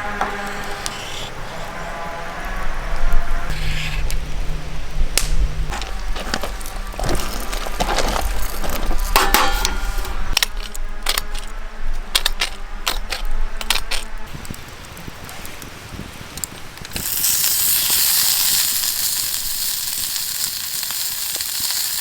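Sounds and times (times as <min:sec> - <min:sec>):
steady low rumble: 0:00.0 - 0:14.9.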